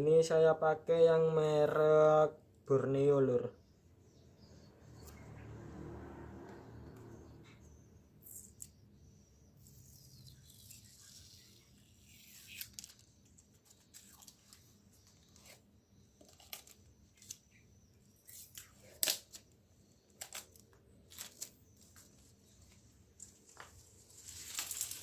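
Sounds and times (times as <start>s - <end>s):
tape crinkling and clicking: 12.1s - 15.6s, 16.2s - 17.4s, 18.3s - 19.6s, 20.2s - 22.3s, 23.2s - 25.0s.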